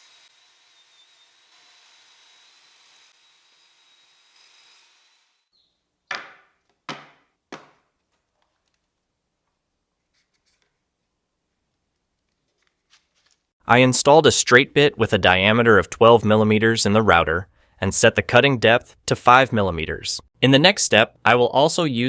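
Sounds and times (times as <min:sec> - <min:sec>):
power tool high whine: 0:00.0 - 0:05.5
wood knocking on wood: 0:06.1 - 0:07.9.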